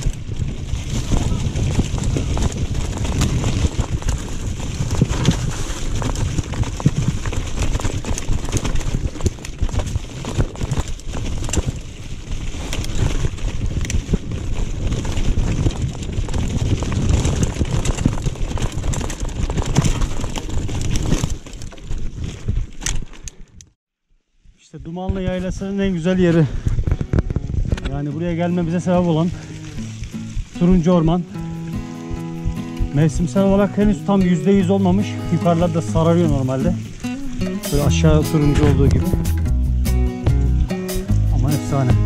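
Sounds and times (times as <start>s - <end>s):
wind on microphone: 0.0s - 22.8s, 24.5s - 34.7s
bike rattling and clattering: 0.0s - 23.8s, 25.2s - 42.0s.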